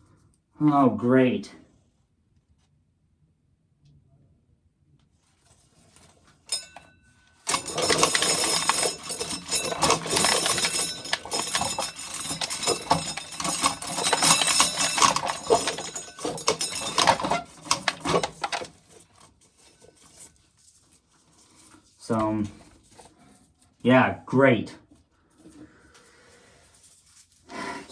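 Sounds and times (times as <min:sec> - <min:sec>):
metallic clink: 0:06.5 - 0:06.9, 0:07.5 - 0:19.0
corn kernels rattling off cob: 0:07.5 - 0:20.2.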